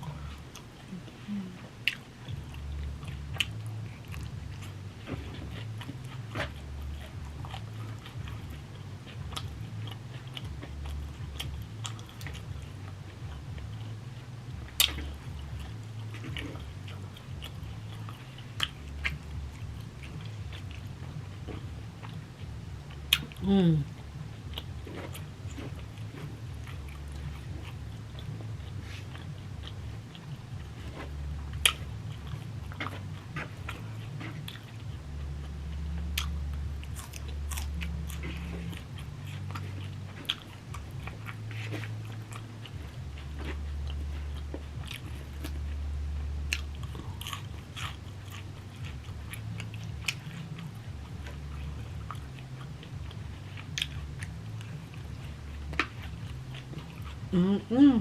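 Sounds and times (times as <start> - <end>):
person chewing food: 0.0 - 58.0
steady low hum: 0.0 - 58.0.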